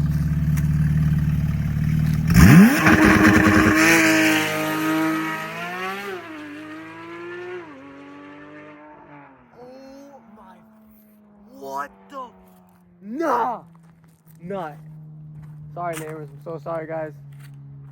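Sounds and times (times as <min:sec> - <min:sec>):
sports car engine revving: 0:00.0 - 0:09.4
car accelerating through upshifts: 0:02.0 - 0:09.5.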